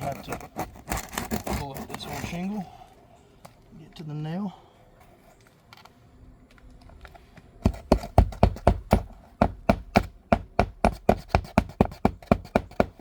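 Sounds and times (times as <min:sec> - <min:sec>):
hammer striking nail on roof: 0:07.6 - 0:13.0.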